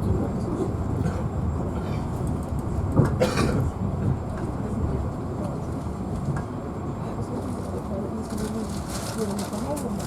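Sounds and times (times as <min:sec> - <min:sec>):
train rumbling: 0:00.0 - 0:10.0.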